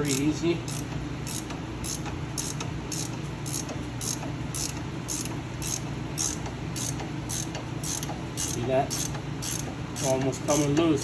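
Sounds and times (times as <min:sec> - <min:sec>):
ratchet wrench clicking: 0:00.0 - 0:10.8
steady low hum: 0:00.0 - 0:11.0.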